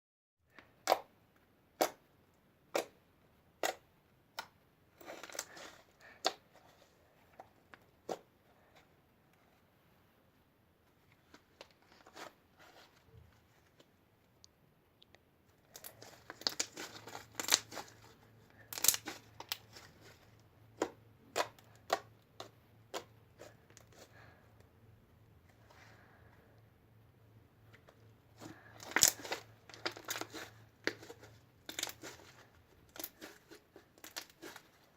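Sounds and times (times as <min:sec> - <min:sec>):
slime popping and crackling: 0:15.7 - 0:19.7, 0:28.8 - 0:32.3, 0:32.9 - 0:34.7.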